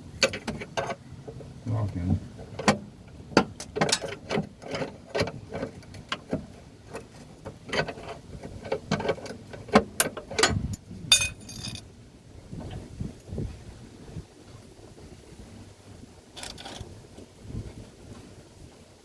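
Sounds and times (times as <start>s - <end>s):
metal tools clinking: 10.4s - 11.8s.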